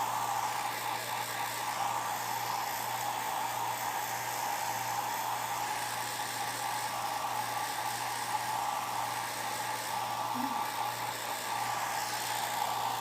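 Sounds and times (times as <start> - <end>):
hair dryer running: 0.0 - 13.0.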